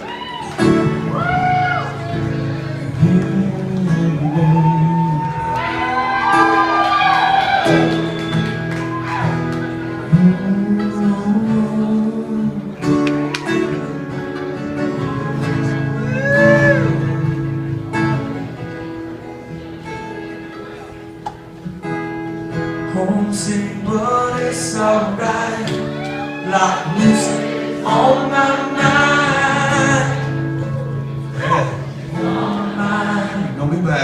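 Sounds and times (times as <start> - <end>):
guitars playing: 0.0 - 34.0
wordless singing: 22.9 - 34.0.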